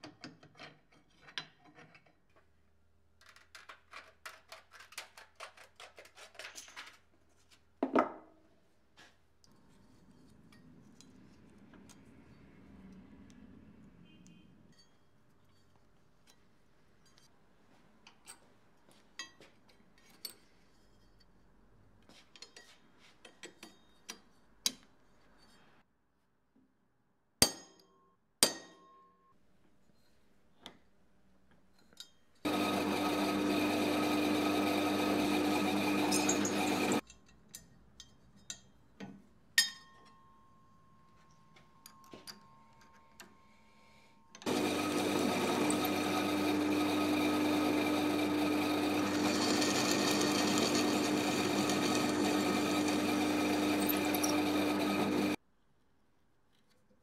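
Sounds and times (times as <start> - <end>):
electric motor humming: 32.5 - 37.0, 44.5 - 55.4.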